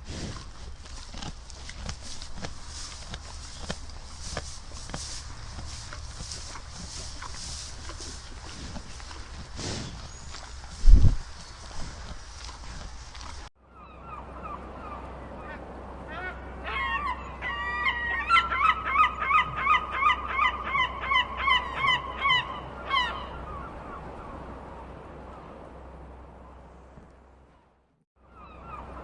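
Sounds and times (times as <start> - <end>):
birds calling: 2.0 - 24.5, 27.5 - 29.0.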